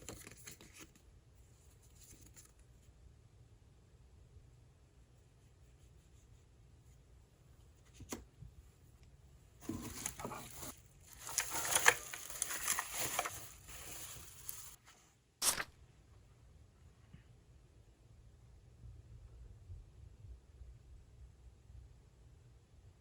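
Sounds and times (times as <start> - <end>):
wrapping crinkling and rustling: 9.6 - 15.6.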